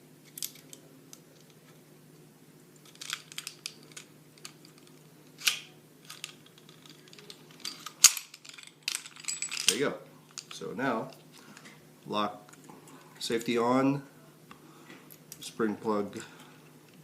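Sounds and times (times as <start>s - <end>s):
pistol parts clicking and scraping: 0.2s - 1.6s, 2.8s - 10.6s.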